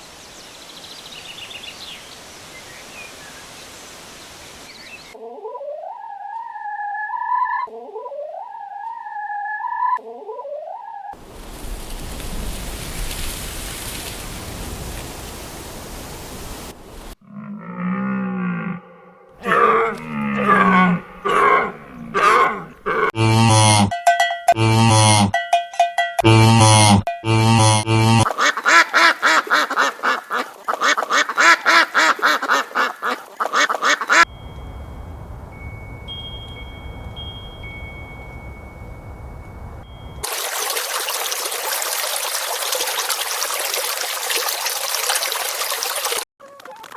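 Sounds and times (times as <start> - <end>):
outdoor background noise: 0.0 - 23.4, 27.7 - 46.9
farm animal calls: 17.2 - 23.9, 27.5 - 34.3.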